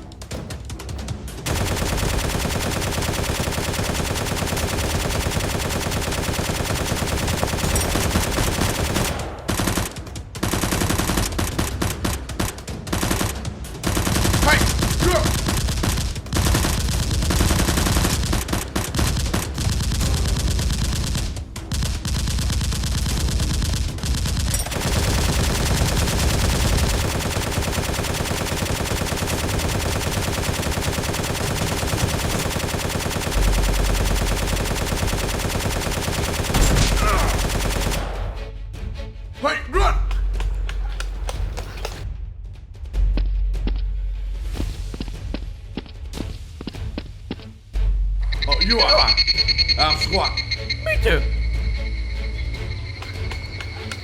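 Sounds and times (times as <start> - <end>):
toy blasters firing rapidly: 1.5 - 9.1, 14.0 - 38.0.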